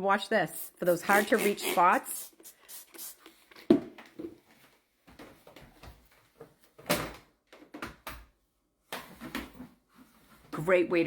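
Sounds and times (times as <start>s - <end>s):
mop scraping: 0.7s - 3.6s.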